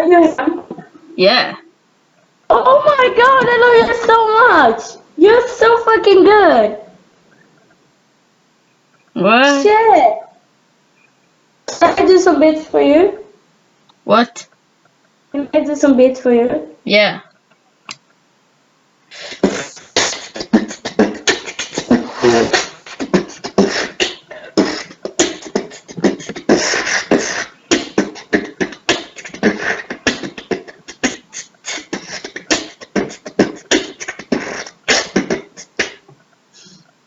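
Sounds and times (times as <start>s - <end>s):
beatboxing: 19.1s - 37.0s.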